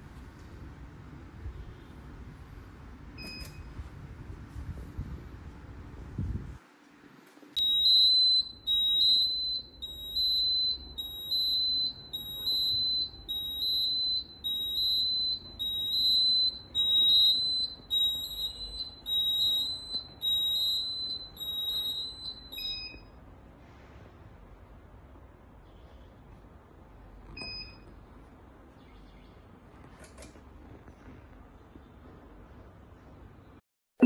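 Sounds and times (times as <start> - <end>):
high-pitched alarm beeping: 7.6 - 23.1
short beep: 7.6 - 23.1.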